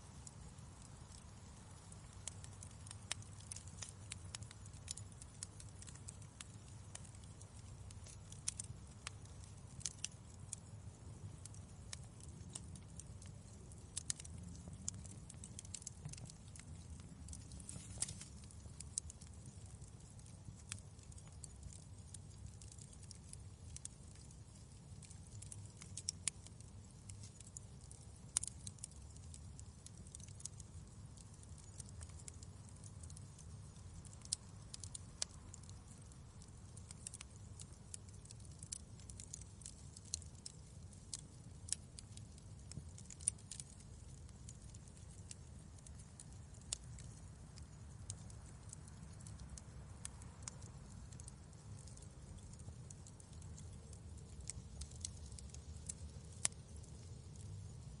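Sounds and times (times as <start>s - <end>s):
wood fire crackling: 0.0s - 58.0s.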